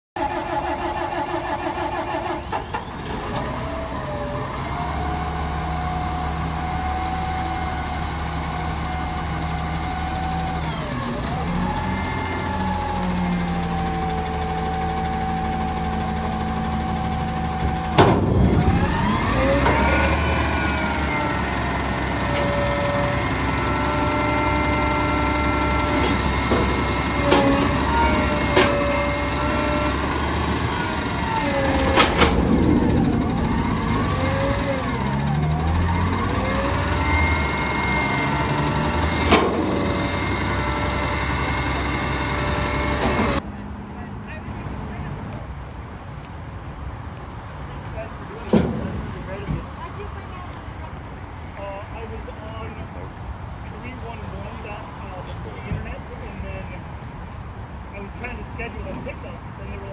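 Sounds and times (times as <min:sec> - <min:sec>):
garbage truck engine idling: 0:00.2 - 0:43.7
engine revving with whining pitch: 0:00.7 - 0:43.6.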